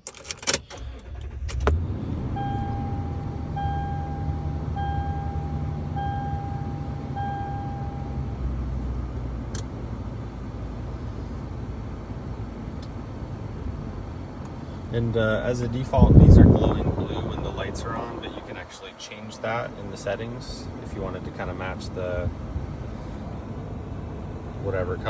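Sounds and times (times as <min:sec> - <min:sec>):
low hum of truck engine: 0:00.0 - 0:25.0
vehicle chime dinging: 0:02.3 - 0:08.6.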